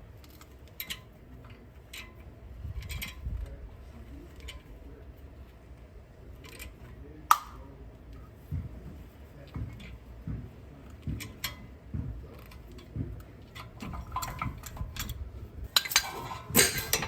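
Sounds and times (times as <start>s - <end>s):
sharp metal clicks and clinks: 13.6s - 15.2s, 15.8s - 17.0s.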